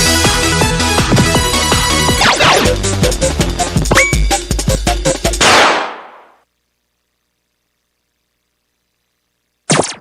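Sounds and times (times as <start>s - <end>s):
electronic dance music: 0.2s - 5.3s.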